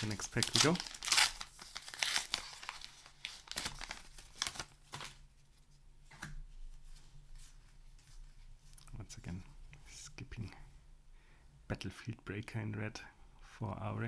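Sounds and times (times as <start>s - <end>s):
paper wrapper tearing and crinkling: 0.0s - 5.2s.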